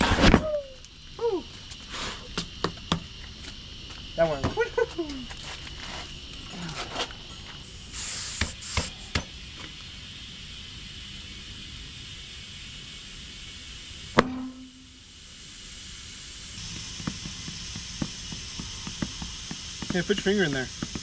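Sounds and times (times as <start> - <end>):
compressed air hissing into tire: 1.6 - 4.1, 7.6 - 21.0
sharp pop: 14.2 - 14.7.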